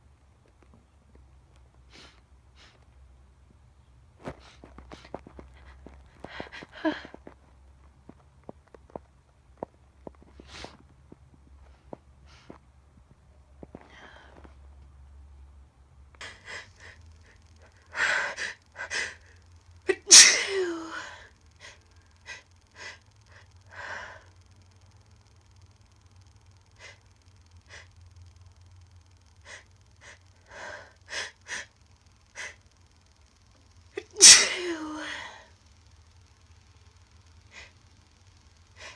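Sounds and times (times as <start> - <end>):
woman gasping: 5.6 - 7.3, 19.9 - 24.3, 34.0 - 35.5
woman sneezing: 19.9 - 21.1, 34.0 - 35.3.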